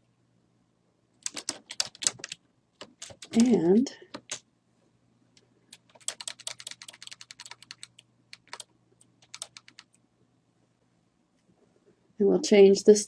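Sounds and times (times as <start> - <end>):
typing on computer keyboard: 1.2 - 4.4, 5.7 - 10.0.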